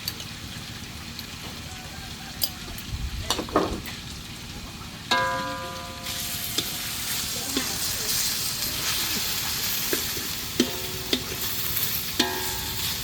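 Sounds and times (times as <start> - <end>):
spatula clanging on pot: 5.1 - 6.8, 9.9 - 13.0
meat sizzling in a pot: 5.1 - 13.0.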